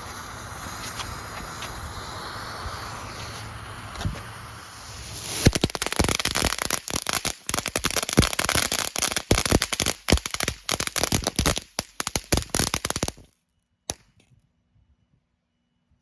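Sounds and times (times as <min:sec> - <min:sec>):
firework crackling: 0:00.0 - 0:13.3
sharp crack: 0:05.1 - 0:13.3, 0:13.9 - 0:14.3.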